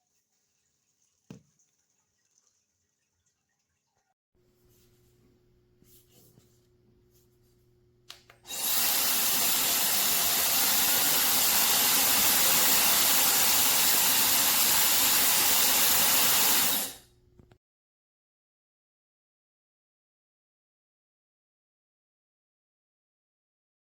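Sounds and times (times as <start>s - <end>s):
hair dryer blowing: 8.4s - 17.0s.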